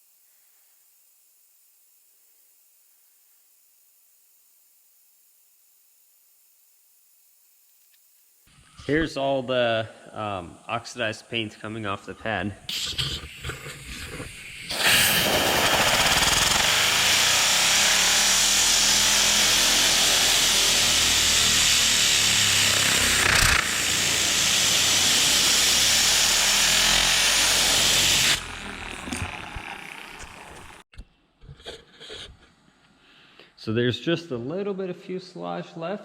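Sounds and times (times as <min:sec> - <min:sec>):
dual action polisher running: 0:14.7 - 0:30.8.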